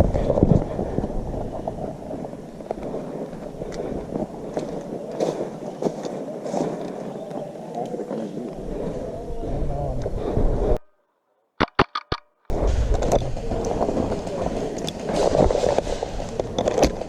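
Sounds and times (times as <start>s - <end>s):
sharp clicks: 11.6s - 12.4s
rustling and scraping: 11.6s - 17.0s.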